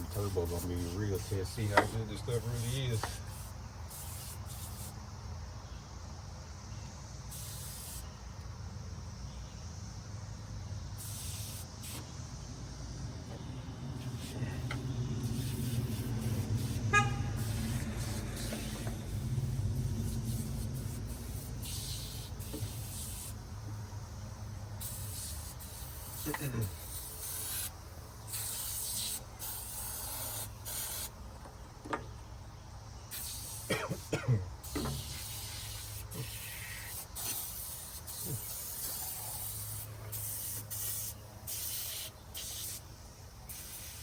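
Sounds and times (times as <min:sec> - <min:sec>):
aerosol spray hissing: 0:00.0 - 0:05.1, 0:07.3 - 0:08.1, 0:11.0 - 0:12.1, 0:14.0 - 0:23.4, 0:24.8 - 0:31.2, 0:33.1 - 0:44.0
low mechanical drone: 0:12.1 - 0:21.6.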